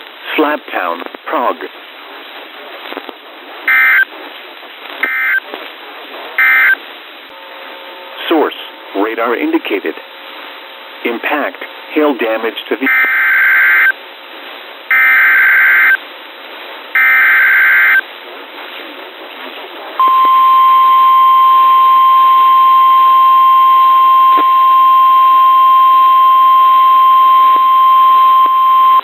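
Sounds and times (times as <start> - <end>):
steady single-pitch attention tone: 20.0 - 29.0.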